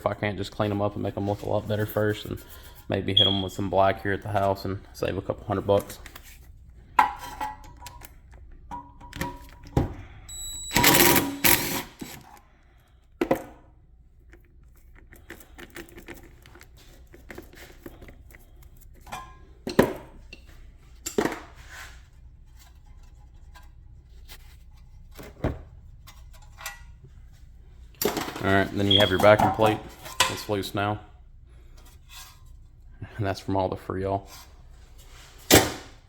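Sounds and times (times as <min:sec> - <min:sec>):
tools and metal parts clanking: 0:28.0 - 0:30.6.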